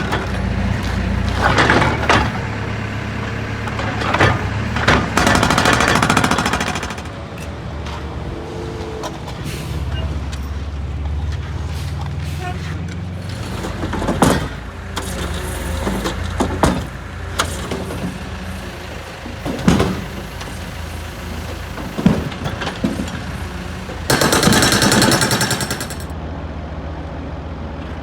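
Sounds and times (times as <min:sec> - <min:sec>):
diesel engine running: 0:00.0 - 0:28.0
loud rapid rattle: 0:04.9 - 0:07.2, 0:24.1 - 0:26.1.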